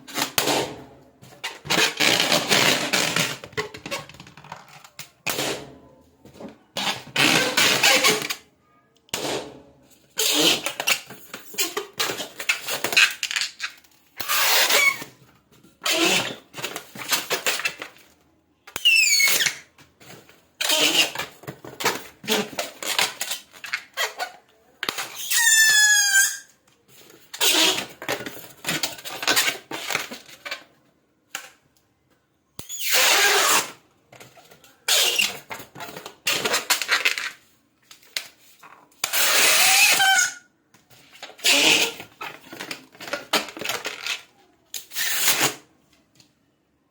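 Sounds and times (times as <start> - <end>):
balloon neck squealing: 18.8 - 19.6, 25.1 - 26.5, 39.1 - 40.4.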